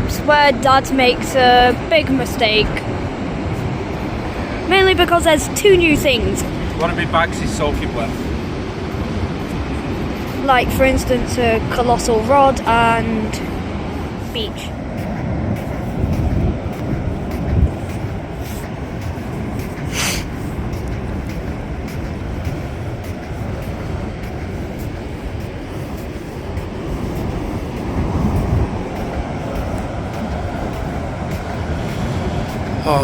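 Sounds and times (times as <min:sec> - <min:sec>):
wind rumble on microphone: 0:00.0 - 0:33.0
brief hiss: 0:19.9 - 0:20.4.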